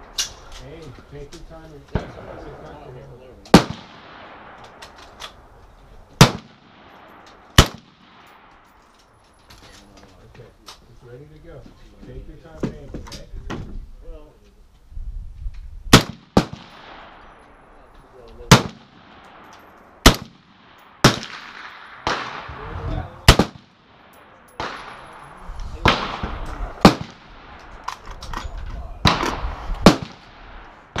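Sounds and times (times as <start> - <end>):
rifle shots echoing: 1.9 - 2.7, 3.5 - 5.4, 6.2 - 8.8, 15.9 - 28.0, 29.0 - 31.0
fainter distant shots: 1.9 - 5.2, 6.2 - 8.6, 15.9 - 27.9, 29.0 - 31.0.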